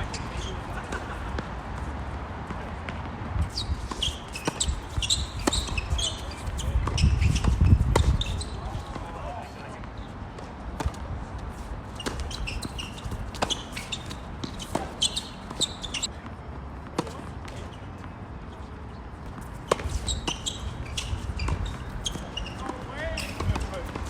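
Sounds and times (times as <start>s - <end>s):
sneakers squeaking: 0.0s - 24.0s
ball bouncing on court: 2.4s - 9.2s, 12.0s - 16.1s, 19.2s - 24.0s
wind rumbling on microphone: 3.2s - 9.0s
tennis ball struck by rackets: 12.0s - 16.1s, 19.3s - 24.0s.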